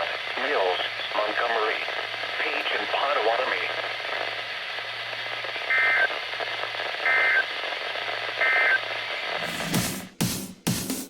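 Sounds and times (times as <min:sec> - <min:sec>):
radio hiss: 0:00.0 - 0:09.9
electronic music: 0:09.4 - 0:11.0.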